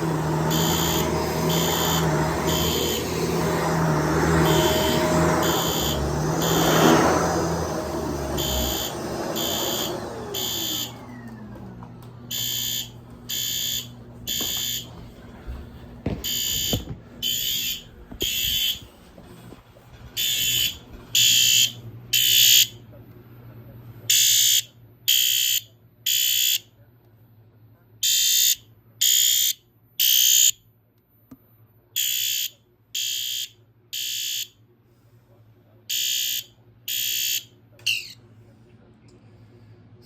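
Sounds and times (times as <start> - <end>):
fire alarm horn blasts: 0.0 - 11.2, 12.3 - 15.0, 16.1 - 18.9, 20.2 - 22.8, 24.1 - 26.7, 28.0 - 30.6, 32.0 - 34.6, 35.9 - 38.2
vacuum cleaner running: 0.0 - 23.0.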